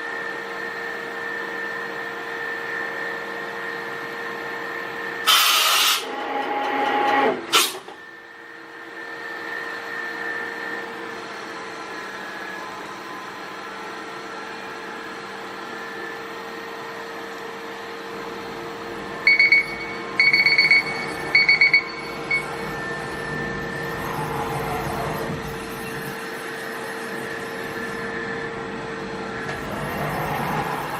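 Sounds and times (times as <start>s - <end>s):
machine hum with constant tone: 0.0s - 30.9s
machine whir ending in clack: 5.3s - 8.0s
short high electronic beeps: 19.3s - 22.7s.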